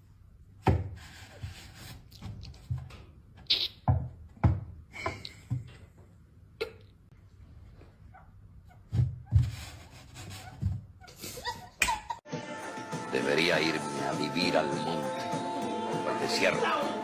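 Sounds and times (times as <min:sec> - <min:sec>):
thumps and knocks: 0:03.8 - 0:06.0, 0:08.8 - 0:09.6.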